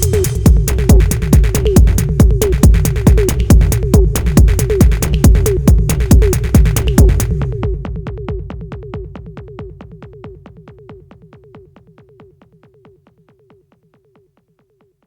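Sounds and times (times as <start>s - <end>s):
low rumble: 0.0s - 10.2s
drum machine techno percussion: 0.0s - 15.0s.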